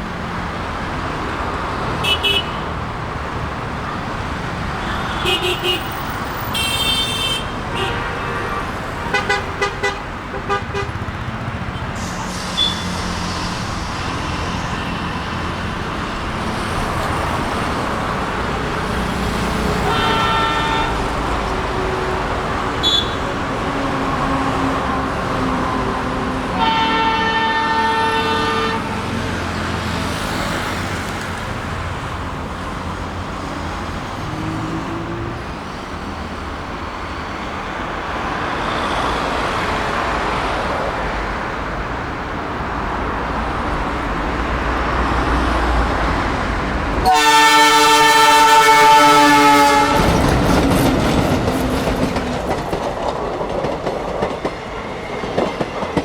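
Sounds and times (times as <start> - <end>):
locomotive horn blasts: 2.0 - 2.7, 4.8 - 11.1, 19.6 - 25.1, 26.5 - 29.2, 47.0 - 50.3
running train rumble: 7.5 - 56.0.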